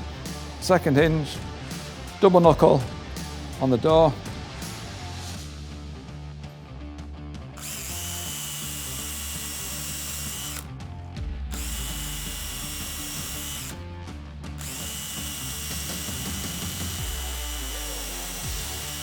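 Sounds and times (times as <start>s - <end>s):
background music: 0.0s - 19.0s
power drill whining: 7.6s - 10.7s, 11.5s - 13.8s, 14.6s - 19.0s.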